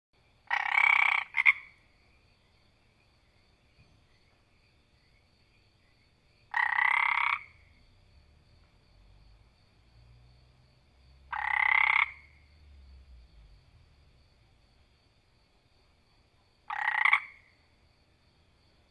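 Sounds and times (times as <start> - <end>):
frog croaking: 0.4 - 2.0, 5.9 - 8.0, 11.1 - 13.1, 16.6 - 17.8.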